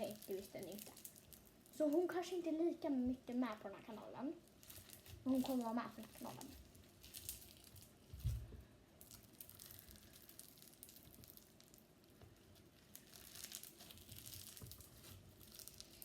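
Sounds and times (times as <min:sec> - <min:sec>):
slime crackling and clicking: 0:09.0 - 0:11.9.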